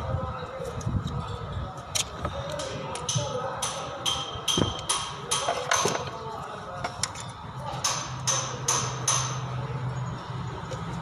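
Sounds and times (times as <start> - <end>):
hammer striking metal: 2.6 - 6.0, 7.8 - 9.6.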